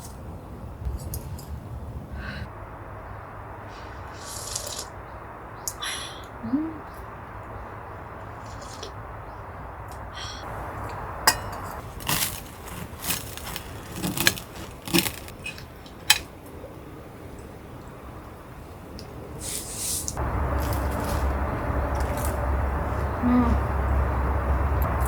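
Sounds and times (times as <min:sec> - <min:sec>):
steady background noise: 0:00.0 - 0:25.0
metal cookware clinking: 0:11.2 - 0:16.3.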